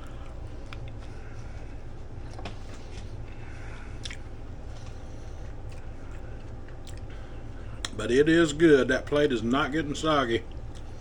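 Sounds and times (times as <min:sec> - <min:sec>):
steady low hum: 0:00.0 - 0:11.0
person chewing: 0:03.8 - 0:07.2.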